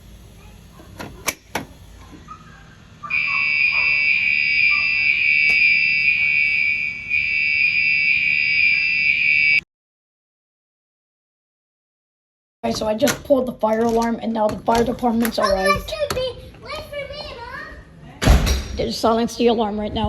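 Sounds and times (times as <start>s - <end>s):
fire alarm high-pitched tone: 3.0s - 9.6s.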